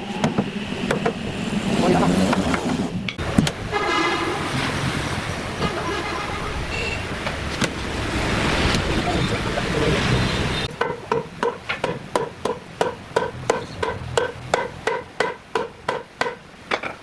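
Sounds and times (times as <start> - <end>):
loud steady rushing noise: 0.0 - 16.7.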